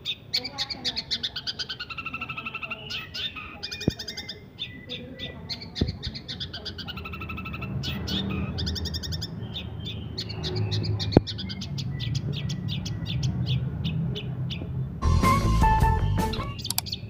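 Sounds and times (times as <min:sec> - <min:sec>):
shrike chattering song: 0:00.0 - 0:14.3, 0:15.0 - 0:17.0
sharp click: 0:16.6 - 0:17.0.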